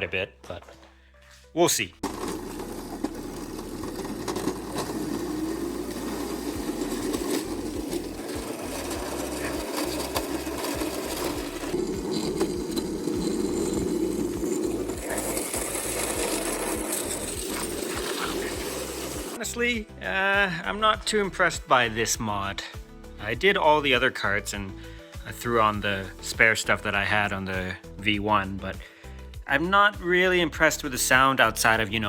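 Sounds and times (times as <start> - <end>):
chassis rattles and knocks: 2.0 - 19.4
electric motor whine: 2.0 - 19.4.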